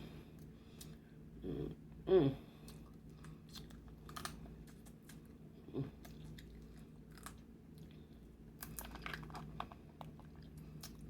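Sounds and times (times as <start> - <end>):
person chewing: 2.5 - 11.0.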